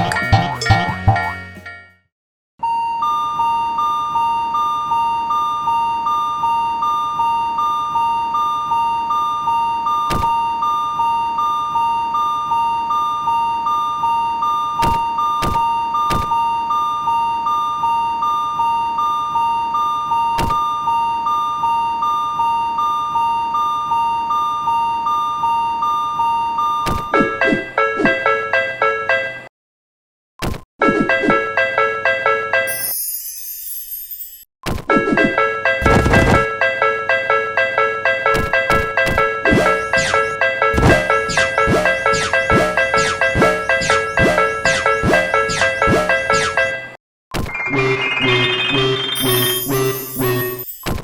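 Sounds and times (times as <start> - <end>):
railroad crossing alarm ringing: 2.8 - 26.8.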